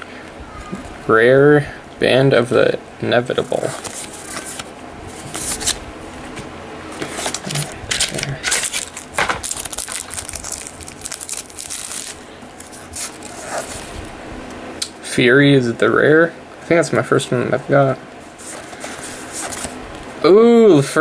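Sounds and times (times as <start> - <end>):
cards sliding: 3.4 - 14.0, 18.4 - 19.8
wrappers rustling: 3.4 - 14.2.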